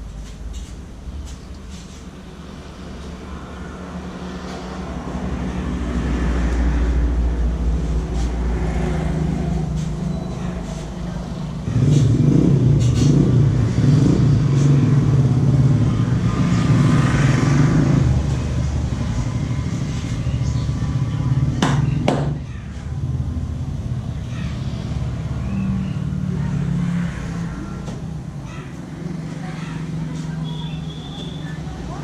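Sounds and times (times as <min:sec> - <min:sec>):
vehicle engine running: 0:00.0 - 0:32.0.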